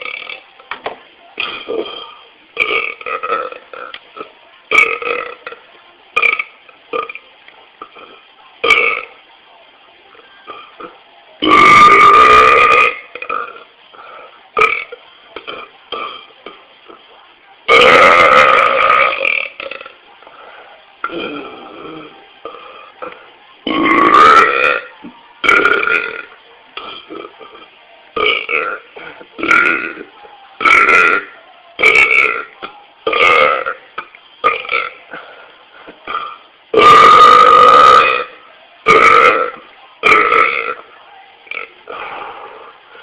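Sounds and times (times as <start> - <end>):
man burping: 17.7 - 19.9, 36.1 - 38.3, 38.9 - 40.8.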